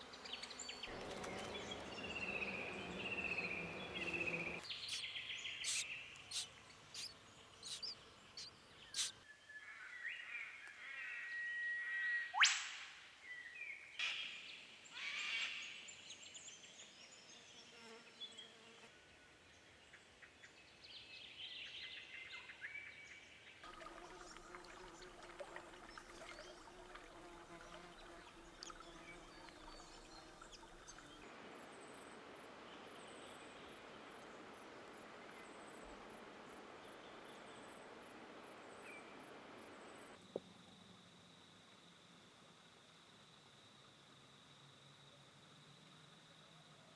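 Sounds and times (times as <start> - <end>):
wild bird calls: 0.8 - 9.2
faint high ticking: 0.9 - 4.6.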